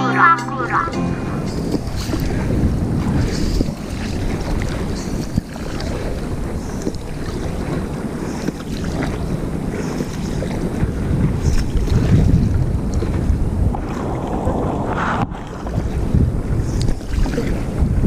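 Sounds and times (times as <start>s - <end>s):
wind buffeting microphone: 10.7s - 18.0s.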